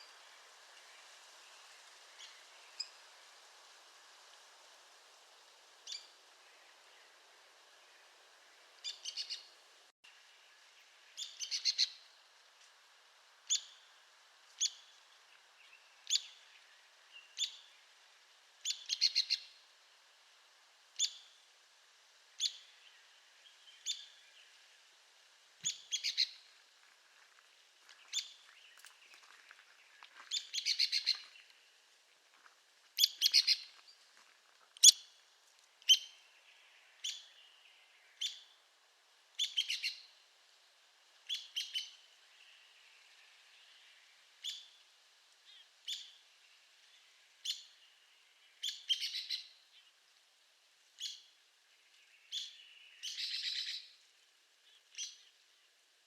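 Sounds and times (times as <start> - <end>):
woodpecker calling: 30.3 - 31.3, 33.0 - 33.7.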